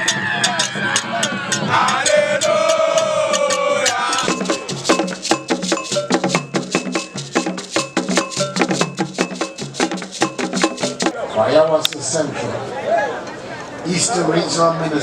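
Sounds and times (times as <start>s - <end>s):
shaker and woodblock percussion: 0.0s - 11.2s.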